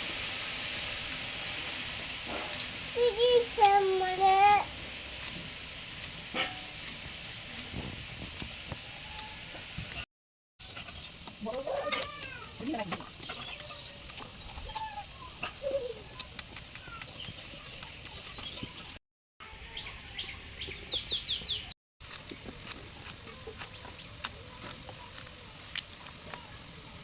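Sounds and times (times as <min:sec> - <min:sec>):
steady high hiss: 0:00.0 - 0:10.0, 0:22.1 - 0:27.0
birds chirping: 0:10.7 - 0:21.7, 0:22.5 - 0:25.5.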